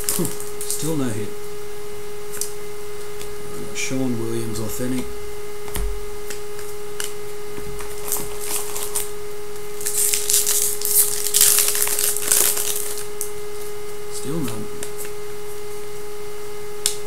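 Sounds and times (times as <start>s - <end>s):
wrappers crinkling and tearing: 0.0s - 0.9s, 7.8s - 9.1s, 9.8s - 13.7s
steady hum: 0.0s - 17.0s.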